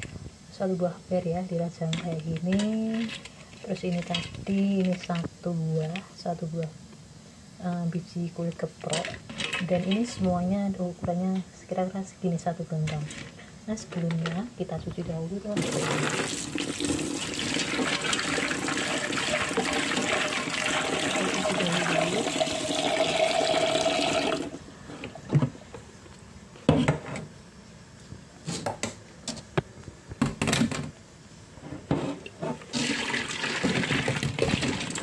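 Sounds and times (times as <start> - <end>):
water running from a tap: 15.6 - 24.5, 32.7 - 35.0.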